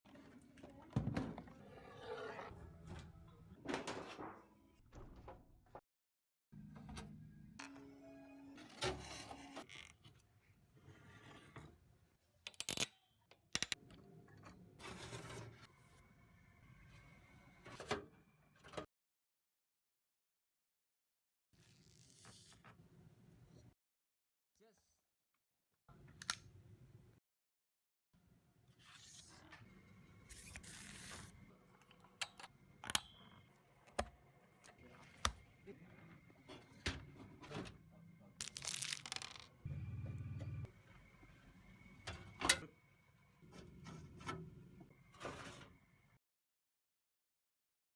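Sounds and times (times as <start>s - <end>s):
packaging rustling: 38.4s - 39.5s.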